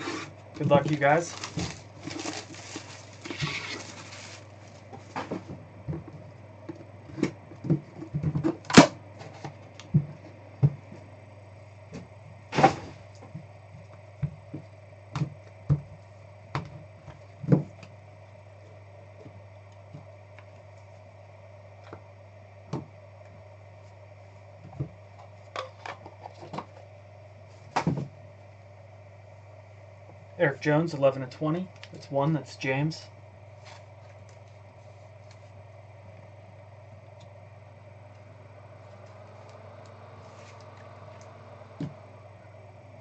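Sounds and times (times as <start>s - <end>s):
steady low hum: 0.0s - 43.0s.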